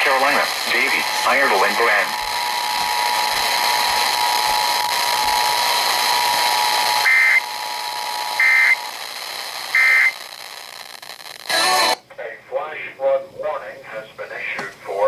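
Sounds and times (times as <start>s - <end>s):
radio hiss: 0.0s - 15.0s
screechy digital data tones: 6.6s - 8.9s, 9.7s - 10.3s.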